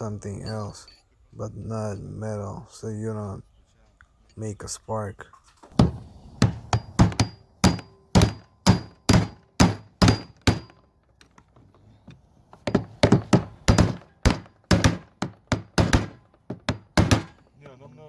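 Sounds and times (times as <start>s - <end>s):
hammer striking metal bar: 5.8s - 10.9s, 12.6s - 17.4s.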